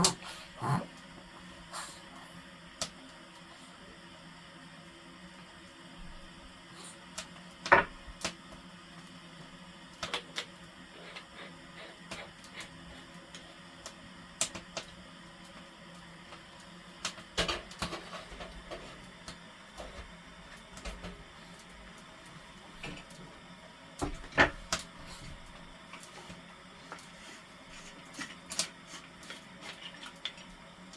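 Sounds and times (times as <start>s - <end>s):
firewood crackling and popping: 13.3s - 15.6s, 24.0s - 27.1s.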